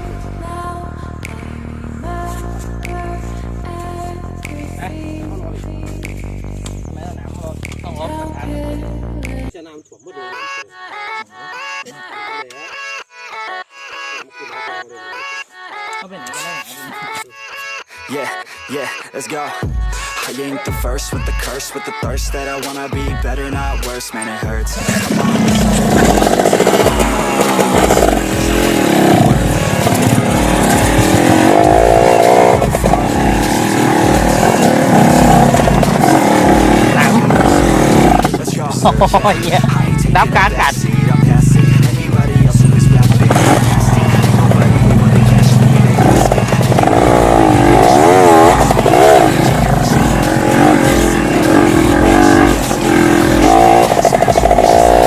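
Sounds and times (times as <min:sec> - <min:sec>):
dirt bike engine revving: 0:24.8 - 0:55.0.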